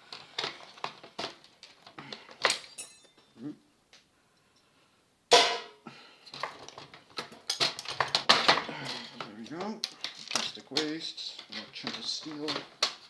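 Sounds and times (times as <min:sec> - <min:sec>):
tools and metal parts clattering: 0:00.1 - 0:03.4, 0:06.3 - 0:13.0.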